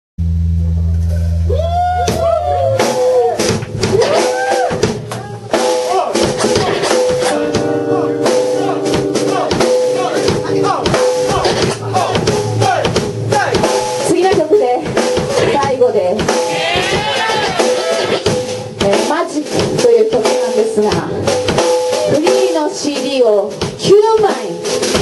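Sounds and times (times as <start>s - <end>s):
sliding bending melody notes: 0.2s - 19.2s
drum kit beat: 0.2s - 25.0s
live band music: 1.2s - 25.0s.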